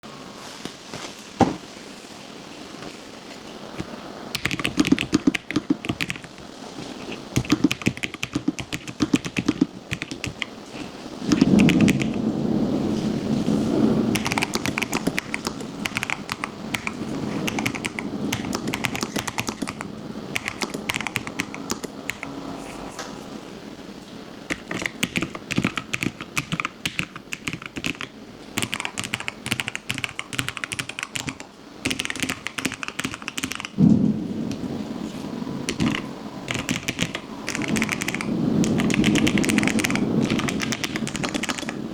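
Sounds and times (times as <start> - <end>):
mechanical keyboard typing: 3.8 - 6.4, 7.0 - 12.2, 14.1 - 22.4, 24.5 - 33.8, 35.7 - 41.8
deep thocky keystrokes: 4.3 - 6.4, 7.4 - 10.5, 11.3 - 12.2, 14.1 - 22.4, 24.5 - 33.8, 35.7 - 41.8.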